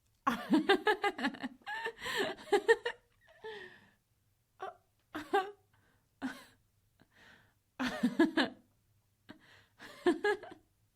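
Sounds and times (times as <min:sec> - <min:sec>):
woman laughing: 0:00.3 - 0:03.1, 0:07.8 - 0:08.6.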